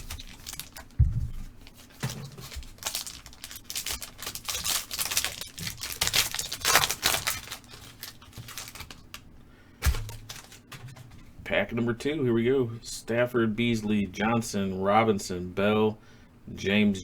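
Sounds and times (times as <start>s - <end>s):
foil wrappers crinkling: 0.0s - 11.2s.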